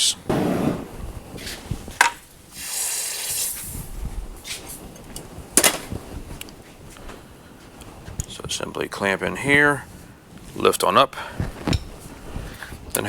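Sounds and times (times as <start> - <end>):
short hiss: 2.5 - 4.8.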